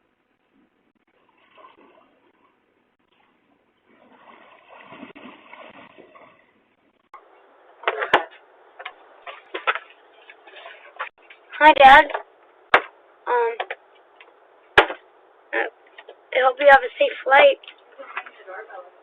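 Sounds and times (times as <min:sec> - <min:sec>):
rustling noise: 0:08.3 - 0:11.6.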